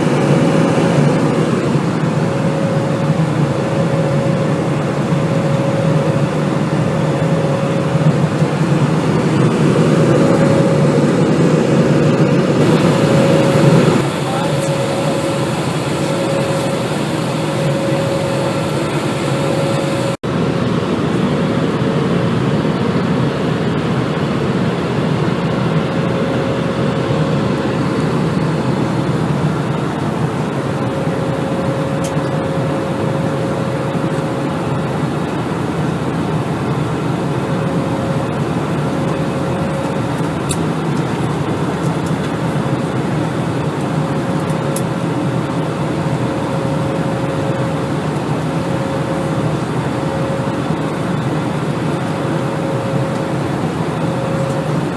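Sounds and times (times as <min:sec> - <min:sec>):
jet engines roaring: 0:00.0 - 0:54.9.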